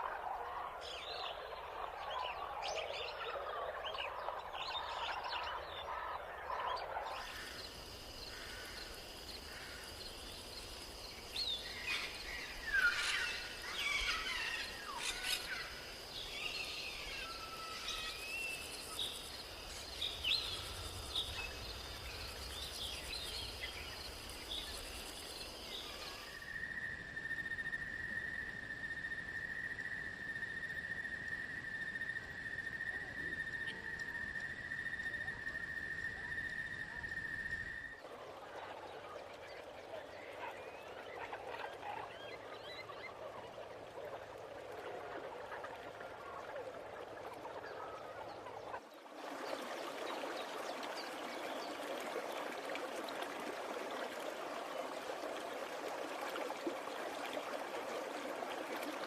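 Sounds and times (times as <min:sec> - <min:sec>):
lower-pitched insect trill: 0:07.1 - 0:37.9
high insect drone: 0:07.2 - 0:28.0.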